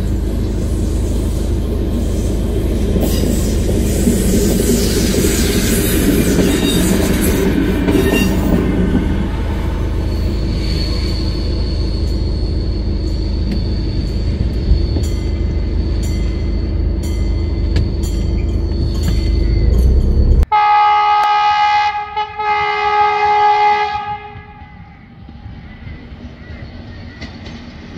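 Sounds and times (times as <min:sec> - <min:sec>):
railcar running along track: 0:00.0 - 0:27.9
high-pitched wheel squeal: 0:00.7 - 0:20.4.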